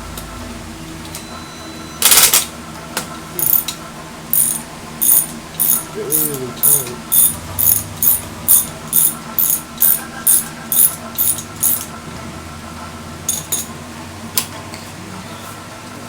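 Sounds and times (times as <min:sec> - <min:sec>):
ratchet wrench clicking: 0:03.4 - 0:03.7, 0:04.3 - 0:11.9.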